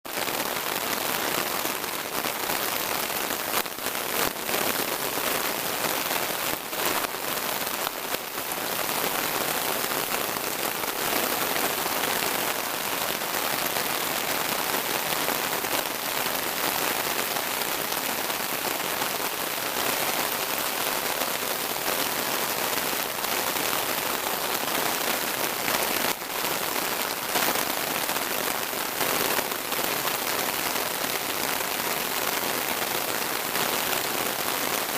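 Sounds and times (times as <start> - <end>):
heavy rain pouring: 0.0 - 34.9.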